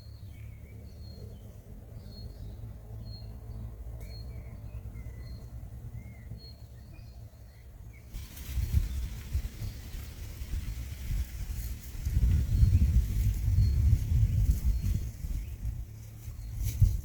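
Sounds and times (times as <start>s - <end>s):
small birds chirping: 0.0s - 17.0s
rush of hissing noise: 8.1s - 12.2s
steady low rumble: 8.1s - 17.0s.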